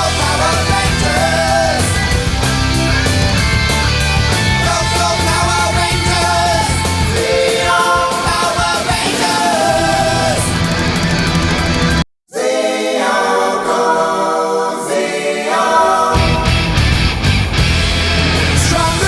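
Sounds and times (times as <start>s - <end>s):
rock song with singing and guitar: 0.0s - 12.0s, 16.1s - 19.0s.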